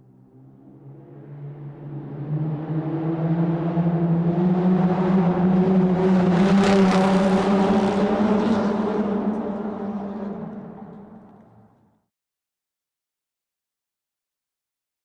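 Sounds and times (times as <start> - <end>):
car engine hum: 3.0 - 11.9.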